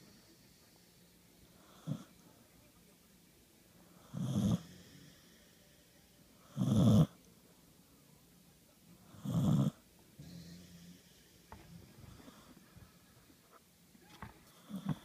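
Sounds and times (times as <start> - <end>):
dog snoring: 1.6 - 2.1, 4.0 - 5.2, 6.4 - 7.2, 9.1 - 11.0, 14.5 - 15.0.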